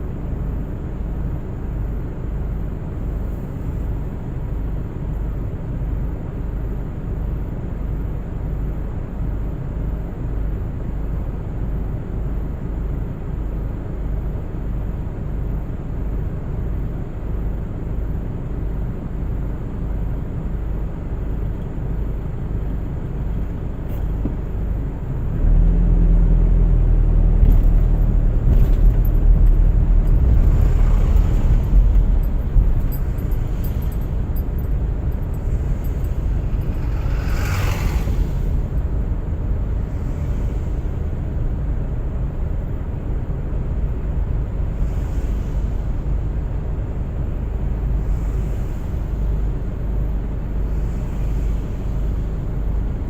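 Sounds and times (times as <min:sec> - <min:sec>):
car tyre and engine rumble: 0:00.0 - 0:14.4, 0:17.4 - 0:53.0
brief whoosh: 0:29.7 - 0:42.0.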